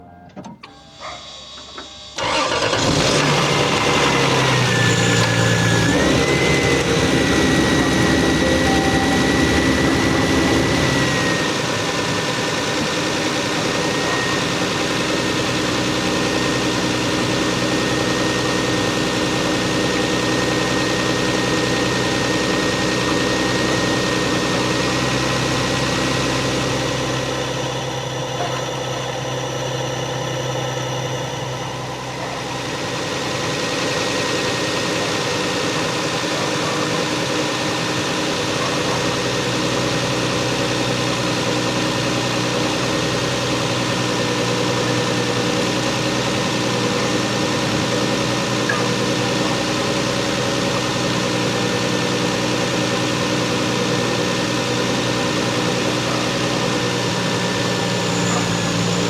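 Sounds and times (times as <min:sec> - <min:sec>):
thin high whine: 0:00.0 - 0:02.2
car engine idling: 0:01.3 - 0:59.0.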